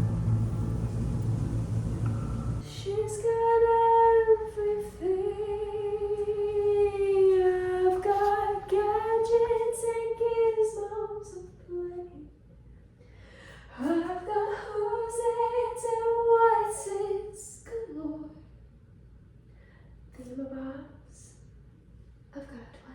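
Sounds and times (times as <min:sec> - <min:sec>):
low rumble: 0:00.0 - 0:10.9.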